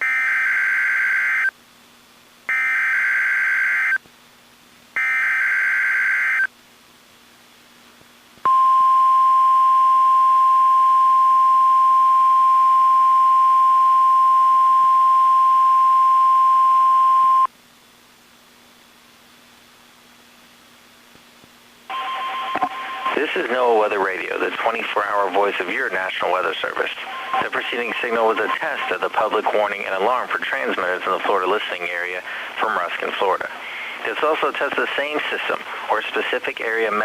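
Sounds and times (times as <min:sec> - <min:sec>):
steady warning alarm tone: 0:00.0 - 0:01.5, 0:02.5 - 0:04.0, 0:05.0 - 0:06.5, 0:21.9 - 0:23.4, 0:26.9 - 0:29.1
buzzy data bursts: 0:26.8 - 0:29.7.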